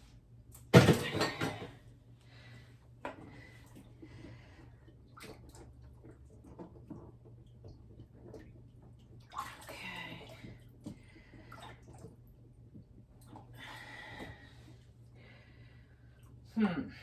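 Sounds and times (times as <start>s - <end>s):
water sloshing in dishwasher: 3.2s - 14.9s.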